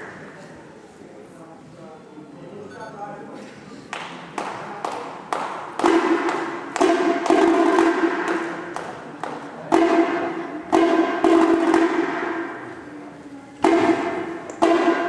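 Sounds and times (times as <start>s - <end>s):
sharp percussion strikes: 5.5s - 9.0s, 9.6s - 12.8s, 13.6s - 15.0s.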